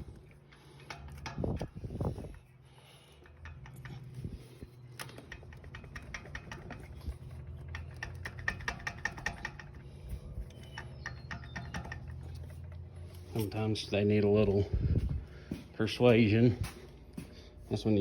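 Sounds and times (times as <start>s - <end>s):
metal parts clicking and knocking: 0.0s - 13.9s
steady low hum: 0.0s - 18.0s.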